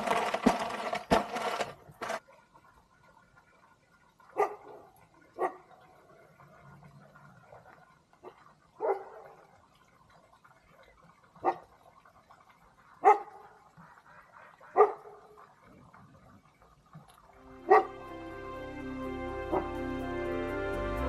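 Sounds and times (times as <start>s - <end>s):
dog barking: 4.4s - 5.7s, 8.8s - 9.4s, 11.4s - 11.7s, 13.0s - 13.6s, 14.4s - 15.4s, 17.6s - 17.9s.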